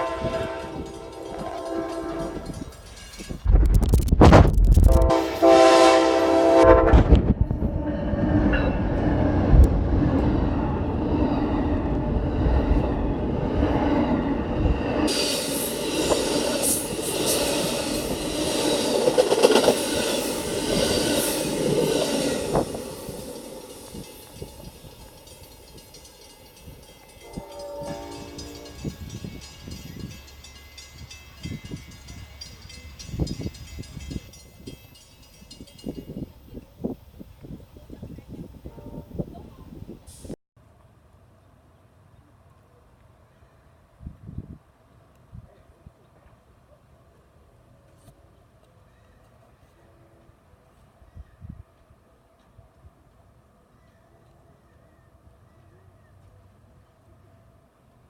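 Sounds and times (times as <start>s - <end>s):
train horn: 0.0s - 2.8s, 4.8s - 8.3s, 26.8s - 30.1s, 38.4s - 39.5s
train passing loudly: 0.0s - 40.4s.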